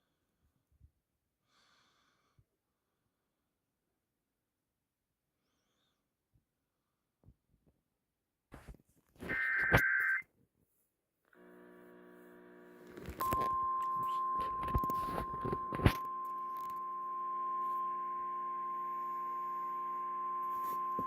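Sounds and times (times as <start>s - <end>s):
radio clicks and crackles: 8.6s - 10.2s, 11.4s - 17.0s
steady high alarm tone: 13.2s - 21.0s.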